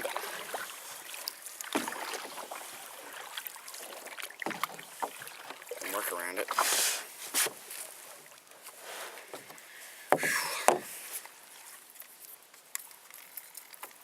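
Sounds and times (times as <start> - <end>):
small boat splashing and knocking: 0.0 - 8.3, 9.2 - 11.1.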